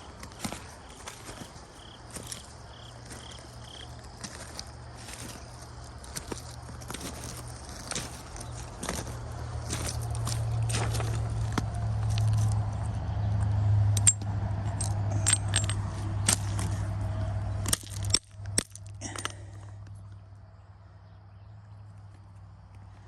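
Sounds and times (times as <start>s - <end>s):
stones knocking together: 0.2s - 12.7s, 14.0s - 19.8s.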